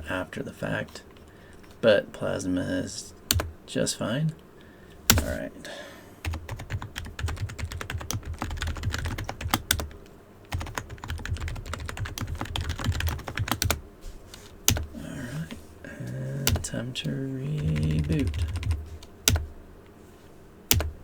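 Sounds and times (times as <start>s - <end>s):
computer keyboard typing: 6.2s - 13.8s, 14.7s - 14.9s, 16.4s - 16.7s, 17.5s - 19.5s, 20.7s - 21.0s.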